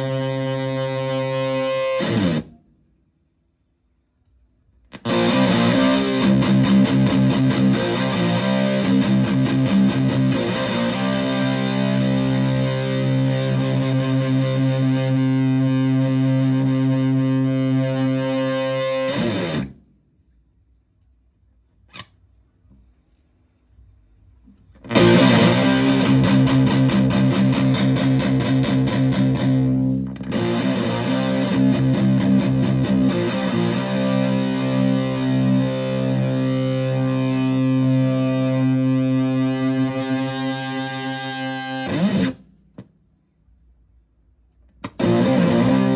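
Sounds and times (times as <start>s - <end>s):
fuzz-distorted electric guitar tone: 0.0s - 2.6s, 5.0s - 19.8s, 24.8s - 42.4s, 44.8s - 45.9s.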